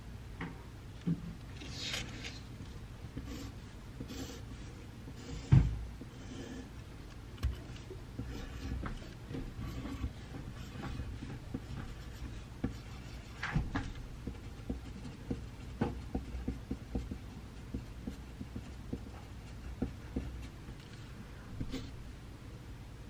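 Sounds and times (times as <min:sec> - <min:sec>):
low room hum: 0:00.0 - 0:23.0
pencil writing on paper: 0:03.2 - 0:06.7, 0:07.6 - 0:21.0, 0:21.6 - 0:22.0.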